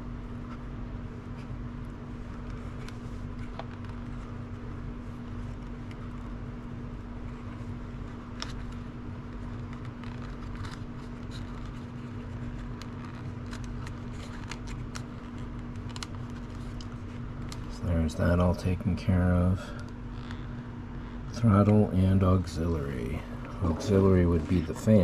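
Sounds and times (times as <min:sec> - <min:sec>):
low machine hum: 0:00.0 - 0:25.0.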